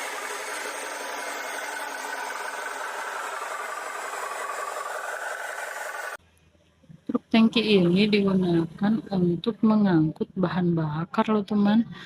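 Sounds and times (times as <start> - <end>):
toy truck motor whirring: 0.0 - 6.2.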